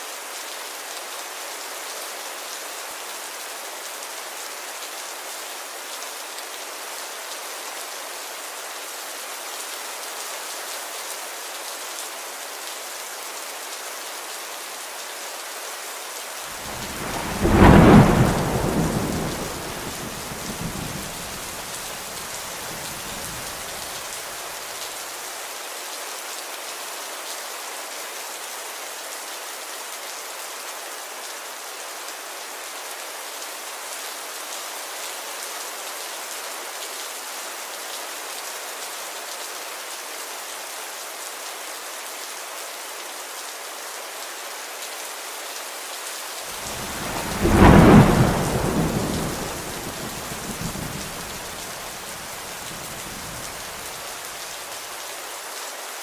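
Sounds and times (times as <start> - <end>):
heavy rain: 0.0 - 56.0
thunder rumble: 16.6 - 23.9, 46.6 - 54.0.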